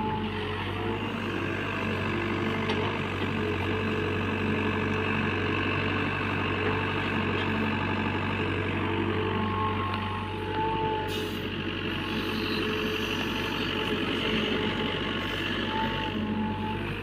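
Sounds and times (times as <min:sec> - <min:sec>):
heavy diesel engine running: 0:00.0 - 0:17.0.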